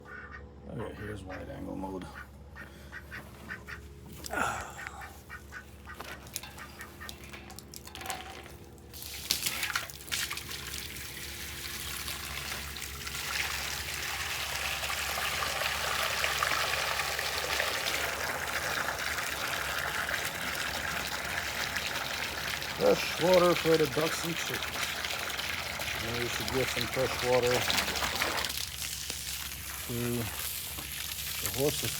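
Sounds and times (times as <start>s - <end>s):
ducks quacking: 0.0s - 7.5s
hose water running into container: 6.2s - 31.9s.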